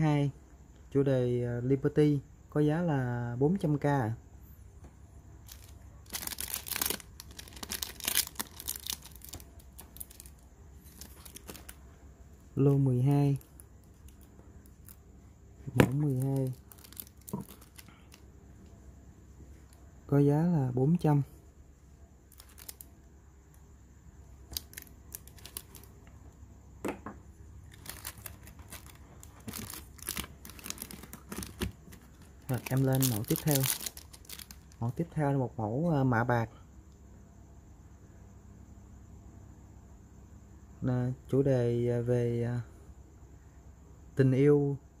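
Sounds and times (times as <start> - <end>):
low steady hum: 0.0 - 45.0
crinkling rustles: 5.4 - 11.8, 12.7 - 15.0, 15.7 - 18.2, 22.3 - 22.9, 24.5 - 26.1, 27.7 - 35.0.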